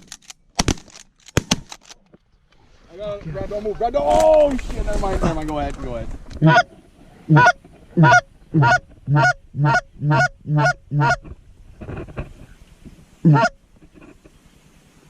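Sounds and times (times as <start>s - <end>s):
goose call honks: 6.4s - 6.7s, 7.3s - 11.3s, 13.2s - 13.6s.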